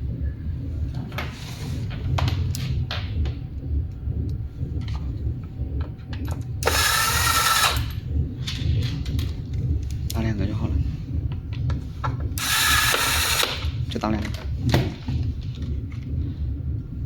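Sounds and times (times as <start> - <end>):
electric screwdriver running: 12.4 - 13.6.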